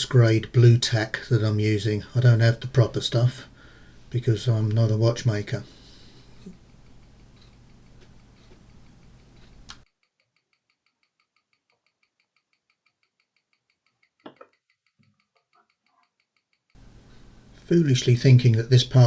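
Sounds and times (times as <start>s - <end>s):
faint room hiss: 0.0s - 9.8s, 16.8s - 19.0s
soft ticks: 10.4s - 17.7s.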